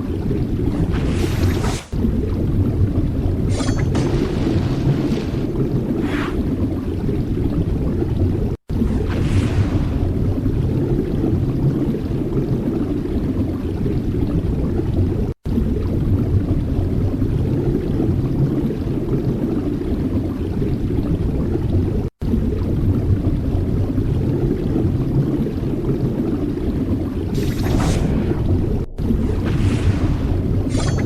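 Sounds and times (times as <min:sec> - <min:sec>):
low rumbling noise: 0:28.0 - 0:30.8.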